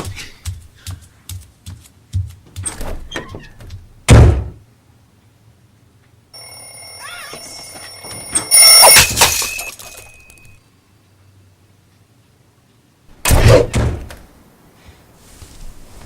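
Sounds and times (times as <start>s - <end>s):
loud thunk: 4.1s - 4.6s
electric bell ringing: 6.4s - 10.6s.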